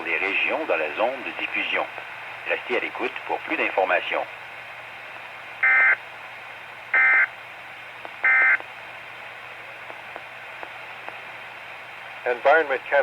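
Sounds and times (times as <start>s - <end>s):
receiver hiss: 0.0s - 13.0s.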